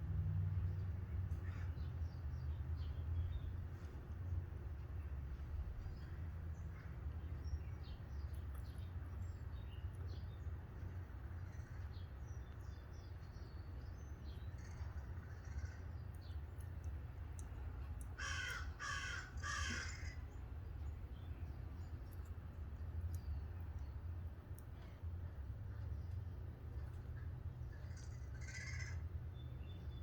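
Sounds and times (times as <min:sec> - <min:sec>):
steady low rumble: 0:00.0 - 0:30.0
crows cawing: 0:14.6 - 0:15.8, 0:18.2 - 0:20.3, 0:27.8 - 0:29.0.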